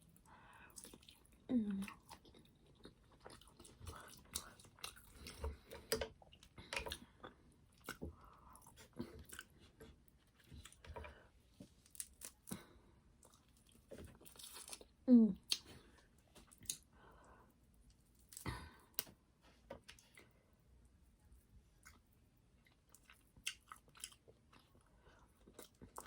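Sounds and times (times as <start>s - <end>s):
chewing: 0.1s - 11.2s, 11.8s - 16.9s, 21.8s - 26.0s.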